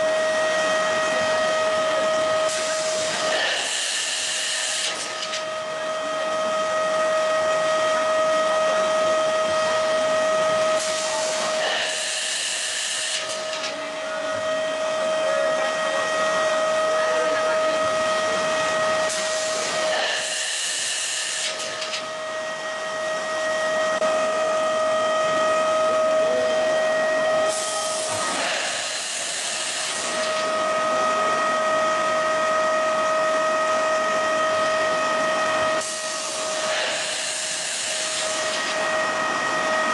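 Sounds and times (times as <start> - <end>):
machine hum with whine: 0.0 - 39.9
loud hissing bursts: 35.8 - 38.6.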